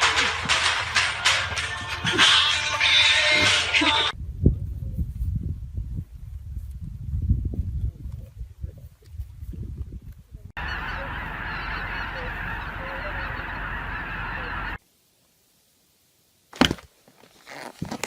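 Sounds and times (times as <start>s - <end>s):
many animal calls: 10.6s - 14.8s.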